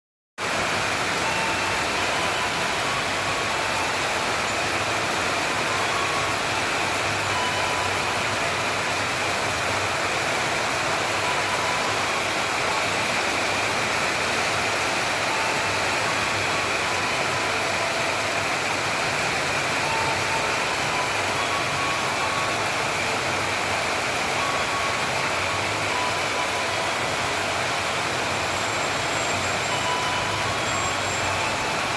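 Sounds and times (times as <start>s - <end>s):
heavy rain: 0.4s - 31.9s.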